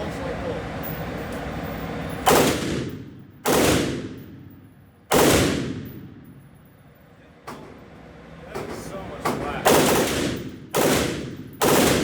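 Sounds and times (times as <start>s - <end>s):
machine gun shots: 2.3s - 4.3s, 5.1s - 6.1s, 9.6s - 12.0s.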